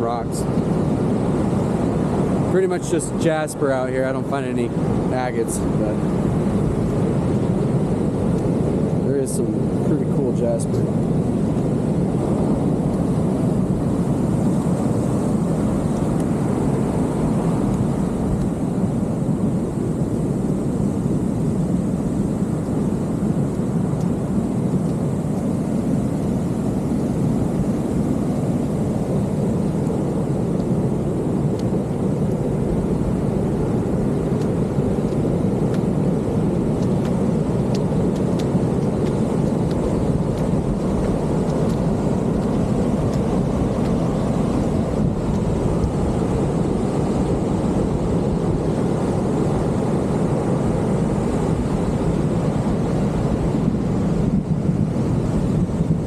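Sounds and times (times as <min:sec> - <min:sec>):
ocean surf breaking: 0:00.0 - 0:08.1
wind: 0:00.0 - 0:56.0.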